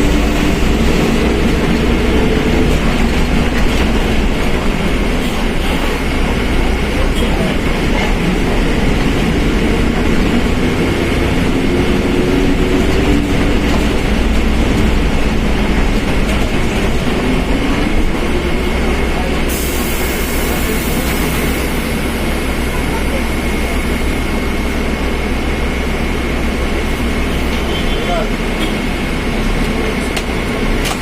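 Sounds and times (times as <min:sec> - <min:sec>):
bus running noise: 0:00.0 - 0:31.0.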